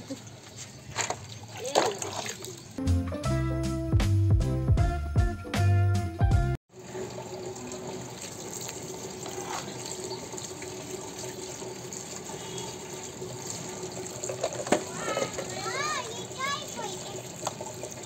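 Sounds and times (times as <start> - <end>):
background music with a beat: 2.8 - 6.6
water running from a tap: 6.7 - 18.0.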